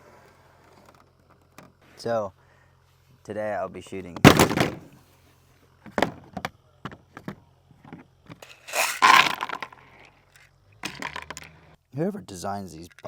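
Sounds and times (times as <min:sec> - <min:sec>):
box clicks and knocks: 0:04.3 - 0:04.9, 0:05.9 - 0:06.5
rough tearing noise: 0:08.4 - 0:09.8.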